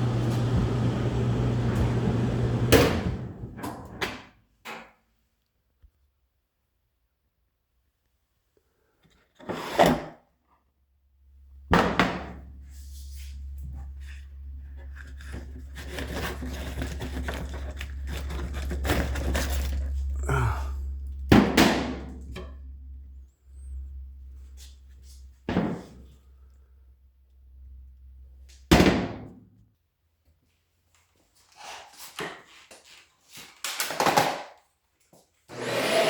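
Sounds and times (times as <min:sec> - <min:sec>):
knocking and scraping of objects: 0:14.7 - 0:20.0.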